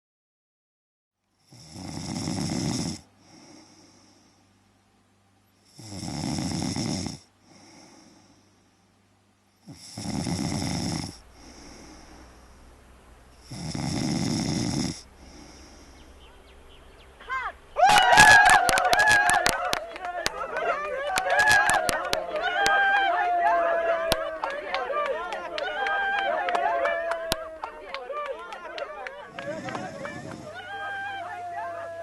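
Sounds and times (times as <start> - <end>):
quiet breaths: 1.2 - 17.3, 26.6 - 32.0
girl snoring: 1.4 - 4.2, 5.7 - 8.4, 9.6 - 12.5, 13.4 - 16.1, 29.4 - 30.6.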